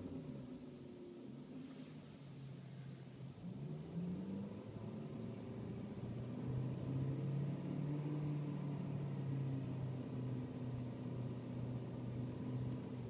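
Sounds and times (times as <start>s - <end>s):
car engine idling: 8.7s - 13.0s.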